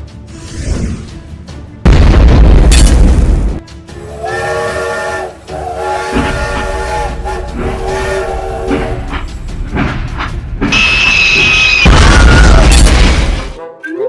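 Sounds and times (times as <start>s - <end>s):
multi-tone train whistle: 3.9s - 9.4s.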